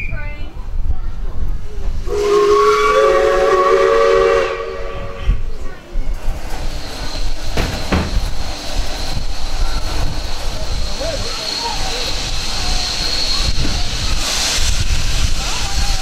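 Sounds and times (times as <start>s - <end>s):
train running noise: 0.0s - 16.0s
steam locomotive whistle: 2.0s - 5.4s
sharp knocks: 7.6s - 8.3s.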